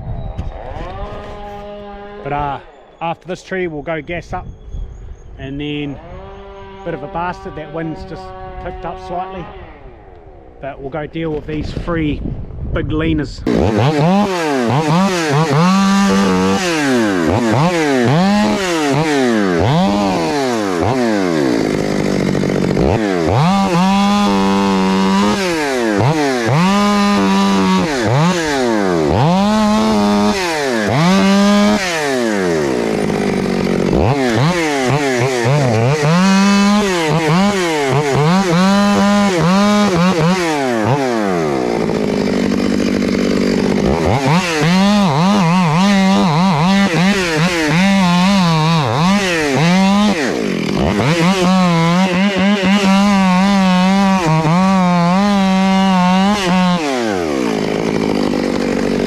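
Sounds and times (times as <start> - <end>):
chainsaw cutting timber: 0.4 - 2.8, 5.7 - 10.6, 13.4 - 59.0.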